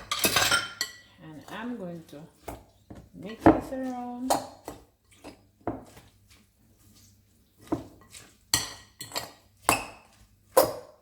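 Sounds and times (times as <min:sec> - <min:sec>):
utensils clinking against bowl: 0:00.0 - 0:05.4, 0:07.7 - 0:10.9.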